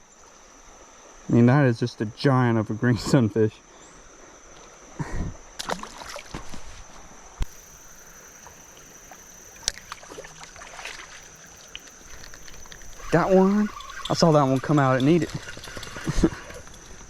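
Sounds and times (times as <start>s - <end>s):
creek water splashing: 5.6s - 17.0s
high-pitched insect drone: 7.4s - 17.0s.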